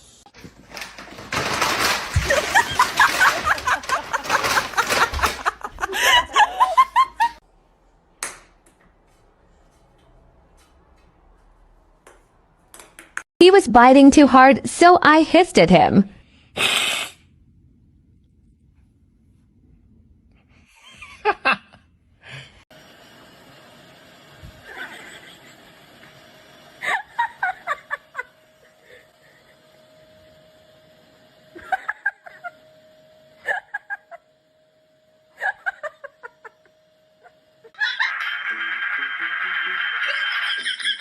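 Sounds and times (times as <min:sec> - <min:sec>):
person laughing: 0:02.1 - 0:07.4, 0:26.8 - 0:29.0, 0:31.6 - 0:32.6, 0:33.4 - 0:34.2, 0:35.4 - 0:36.6, 0:37.8 - 0:41.0.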